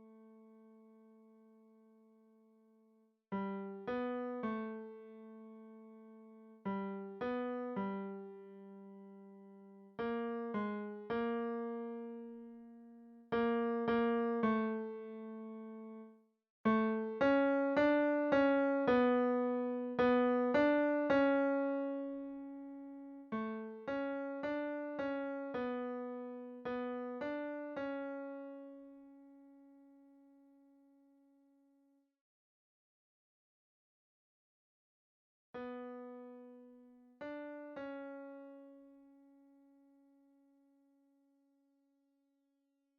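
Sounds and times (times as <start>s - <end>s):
piano melody: 16.7s - 28.9s, 35.6s - 38.7s.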